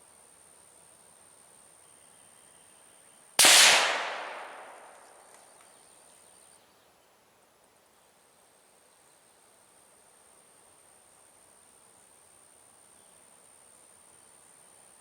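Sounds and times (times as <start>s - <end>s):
rifle shot with echo: 3.4s - 5.4s.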